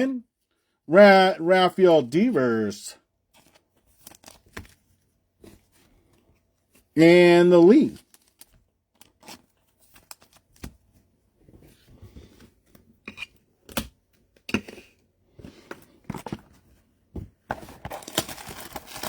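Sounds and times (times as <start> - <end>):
cards rustling: 3.4 - 6.0, 7.6 - 10.8.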